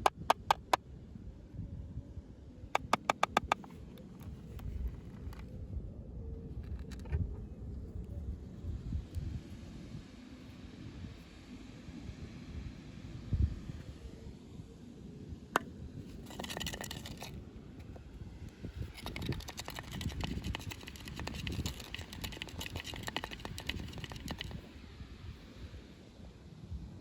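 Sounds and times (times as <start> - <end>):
sharp click: 2.8 - 3.7.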